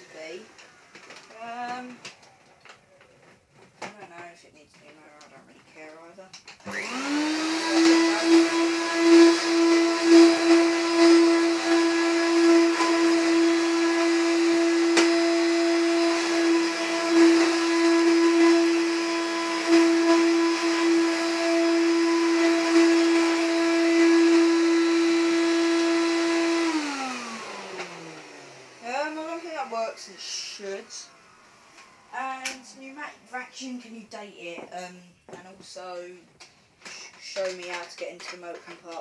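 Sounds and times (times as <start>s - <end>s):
vacuum cleaner motor whine: 6.6s - 33.2s.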